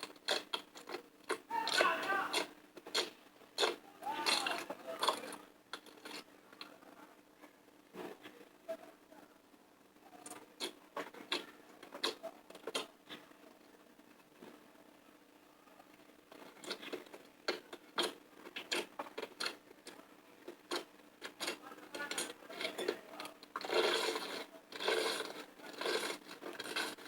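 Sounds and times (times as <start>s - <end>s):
slime squishing by hand: 0.0s - 6.7s, 16.3s - 27.0s.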